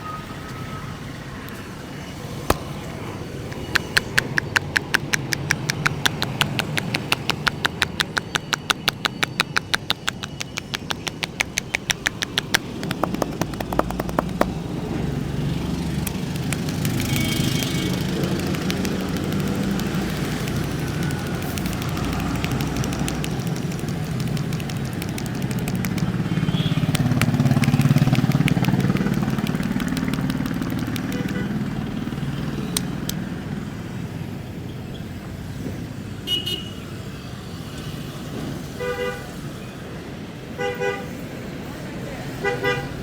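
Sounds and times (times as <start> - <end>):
street traffic hum: 0.0 - 43.0
rapid hand taps: 3.5 - 14.7, 16.0 - 31.5.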